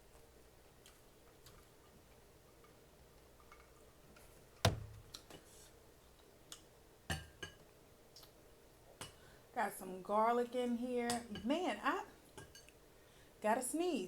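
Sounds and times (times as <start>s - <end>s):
tableware clicks and taps: 7.1s - 7.6s.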